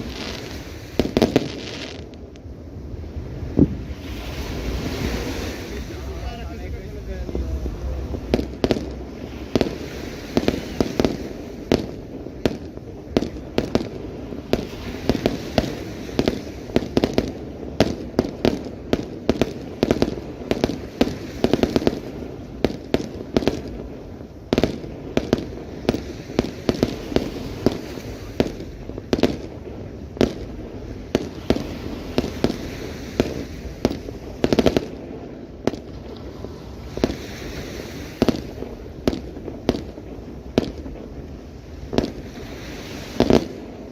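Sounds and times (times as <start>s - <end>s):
fireworks bangs and pops: 0.0s - 2.5s, 3.5s - 43.9s
fireworks crackle: 0.0s - 43.9s.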